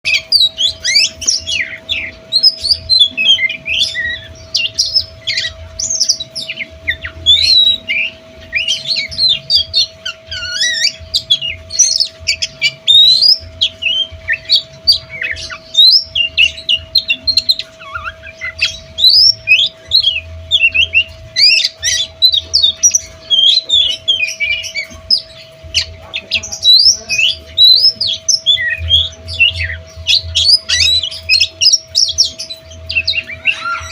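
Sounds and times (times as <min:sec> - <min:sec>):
bird singing: 0:00.0 - 0:33.9
steady hum: 0:00.0 - 0:33.9.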